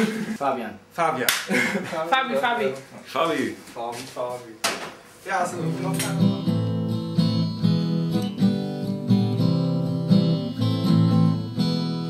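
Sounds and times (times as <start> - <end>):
acoustic guitar strumming: 5.5 - 12.0.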